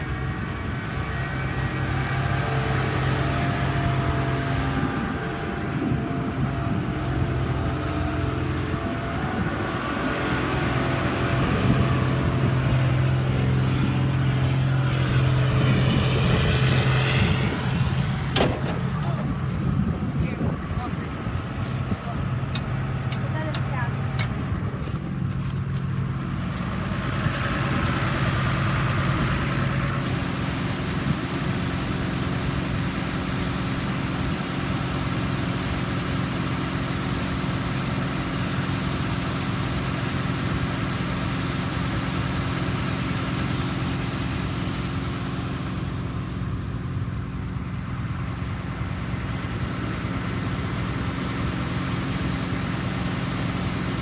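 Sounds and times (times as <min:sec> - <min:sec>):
diesel engine running: 0:00.0 - 0:54.0
machinery hiss: 0:26.6 - 0:54.0.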